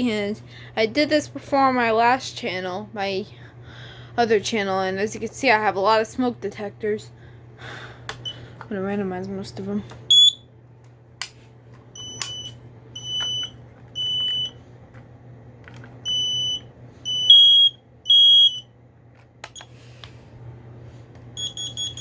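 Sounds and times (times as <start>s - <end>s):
steady low hum: 0.0s - 22.0s
smoke alarm beeps: 10.1s - 10.5s, 11.9s - 14.6s, 16.0s - 18.7s, 21.4s - 22.0s.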